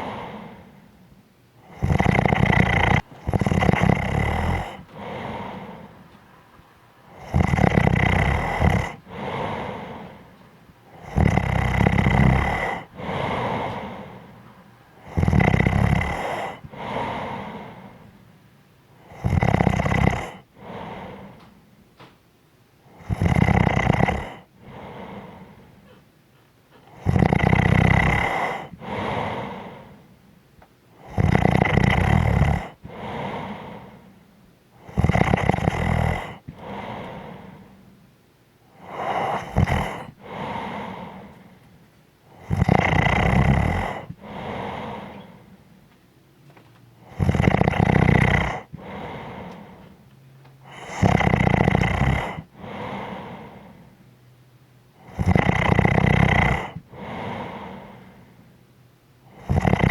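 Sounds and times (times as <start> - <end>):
person snoring: 0.0 - 0.9, 1.6 - 6.0, 7.1 - 10.3, 10.9 - 14.4, 15.0 - 18.1, 19.0 - 21.5, 22.9 - 25.9, 26.8 - 30.1, 31.0 - 34.2, 34.8 - 37.8, 38.7 - 41.7, 42.3 - 45.7, 47.0 - 50.0, 50.6 - 54.0, 55.0 - 58.4, 59.3 - 59.9.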